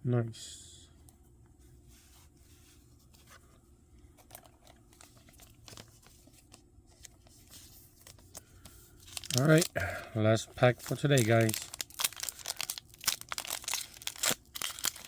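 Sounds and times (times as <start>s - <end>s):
low room hum: 0.0s - 15.0s
cards clicking and wrappers crinkling: 4.1s - 9.8s, 10.4s - 15.0s.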